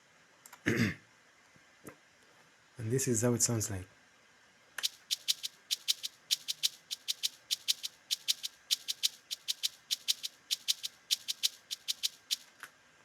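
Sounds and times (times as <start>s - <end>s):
shaker loop pattern: 4.8s - 12.5s.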